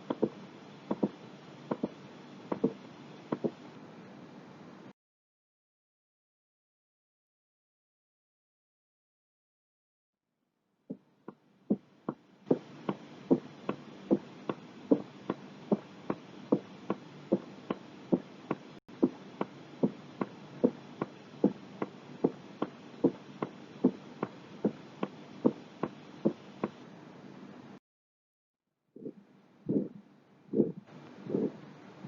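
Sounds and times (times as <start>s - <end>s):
heartbeat: 0.0s - 3.6s, 11.7s - 26.8s, 29.0s - 31.6s
steady hiss: 12.4s - 26.8s.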